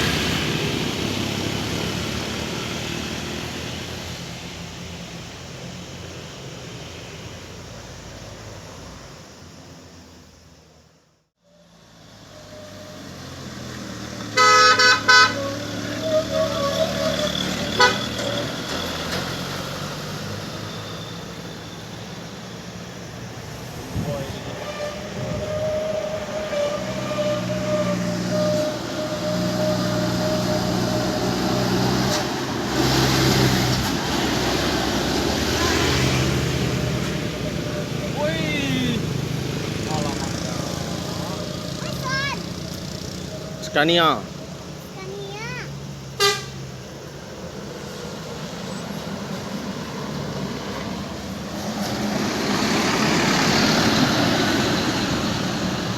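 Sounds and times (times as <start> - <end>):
bus engine approaching: 0.0 - 55.9
road traffic noise: 0.0 - 55.9
loud bus horn blasting: 14.3 - 18.4, 24.5 - 31.6, 46.2 - 46.7.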